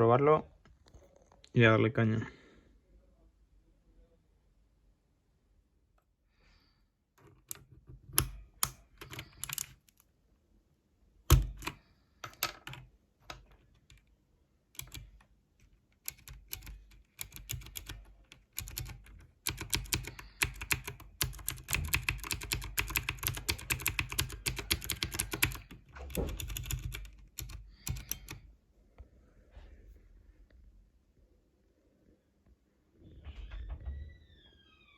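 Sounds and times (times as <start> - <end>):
mechanical keyboard typing: 7.2 - 10.0, 11.3 - 14.0, 14.8 - 28.5.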